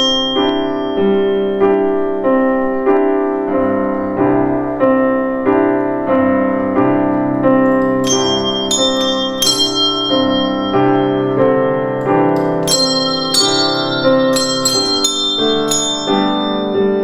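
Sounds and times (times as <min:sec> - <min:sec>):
piano broken chords: 0:00.0 - 0:17.0.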